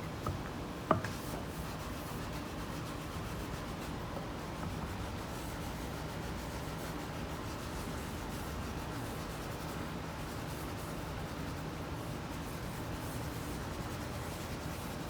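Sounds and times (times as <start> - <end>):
rubbing against wooden surface: 0.3 - 1.4.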